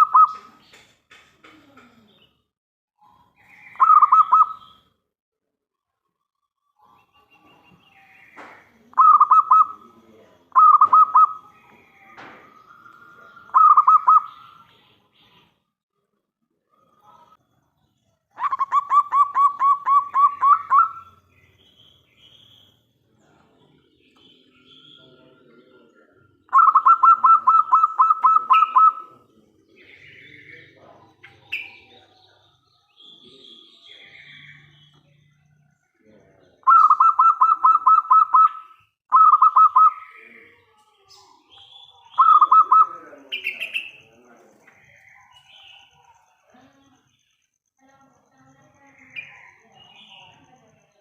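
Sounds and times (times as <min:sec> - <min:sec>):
small birds chirping: 0:00.0 - 0:05.1, 0:05.8 - 0:51.0
dove cooing: 0:03.8 - 0:04.6, 0:09.0 - 0:09.9, 0:13.5 - 0:14.4, 0:18.4 - 0:21.1, 0:26.5 - 0:29.2, 0:36.6 - 0:40.0, 0:42.2 - 0:43.9.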